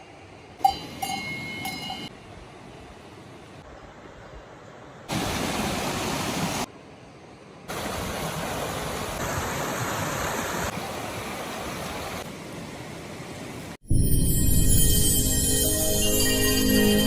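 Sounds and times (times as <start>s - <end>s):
rushing water: 2.3s - 13.8s.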